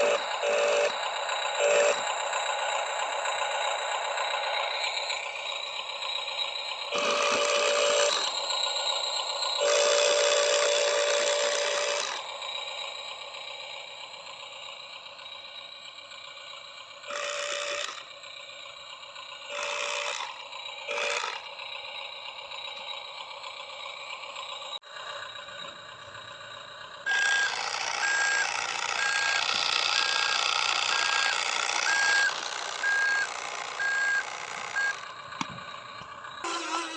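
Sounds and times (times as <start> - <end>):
electric gear motors whining: 0.0 - 36.9.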